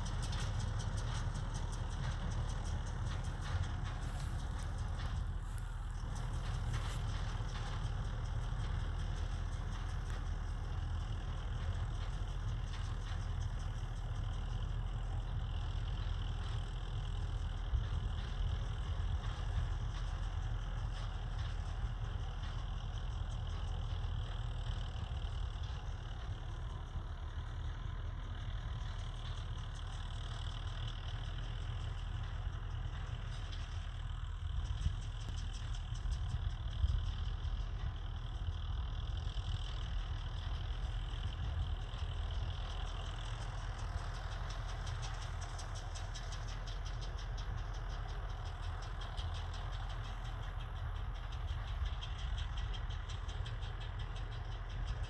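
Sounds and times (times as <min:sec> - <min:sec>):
diesel tractor engine running: 0:00.0 - 0:55.0
fast even machinery clicking: 0:40.6 - 0:55.0.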